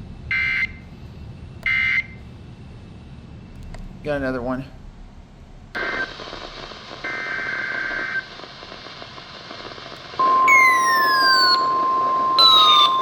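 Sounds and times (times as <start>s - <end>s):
radio static hiss: 5.8s - 13.0s
falling whistle: 10.2s - 13.0s
steady warning alarm tone: 10.2s - 13.0s.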